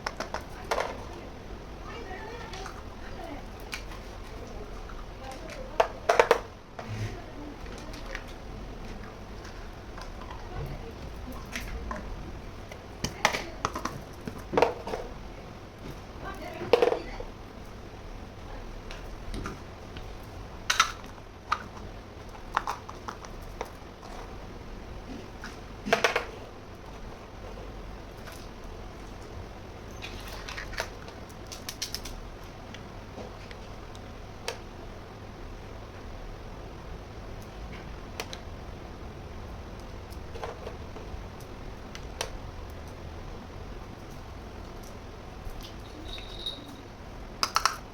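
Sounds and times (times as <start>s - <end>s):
steady low hiss: 0.0s - 47.9s
toy pieces clicking and clacking: 47.4s - 47.8s.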